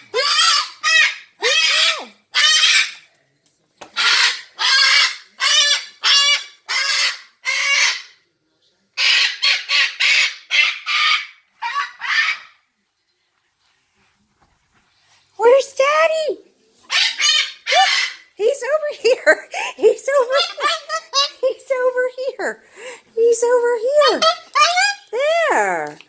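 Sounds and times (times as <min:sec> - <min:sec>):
parrot squawking: 0:00.0 - 0:03.1, 0:04.0 - 0:08.2, 0:09.0 - 0:12.6, 0:16.9 - 0:22.5, 0:23.4 - 0:25.8.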